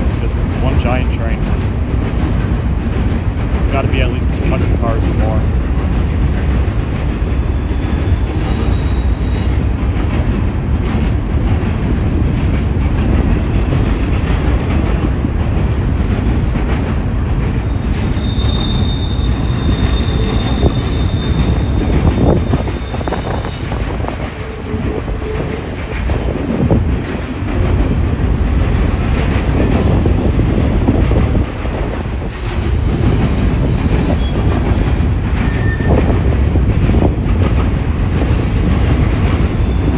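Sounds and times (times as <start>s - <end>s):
freight train wheels rumbling on rail: 0.0s - 39.9s
high wheel squeal: 2.3s - 10.9s, 17.7s - 24.7s, 29.5s - 30.9s, 32.3s - 36.0s, 38.2s - 39.9s.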